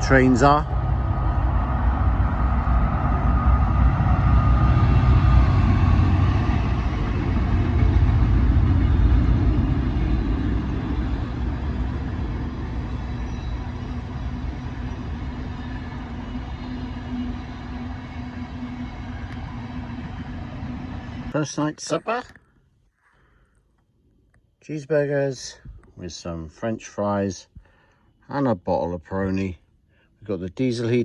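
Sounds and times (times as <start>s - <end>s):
train rumbling past: 0.0s - 22.2s.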